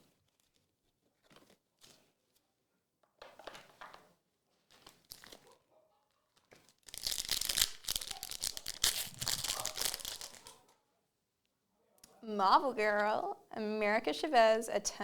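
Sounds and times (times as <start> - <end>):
foil wrapper tearing and crinkling: 4.6 - 5.5, 6.4 - 10.6.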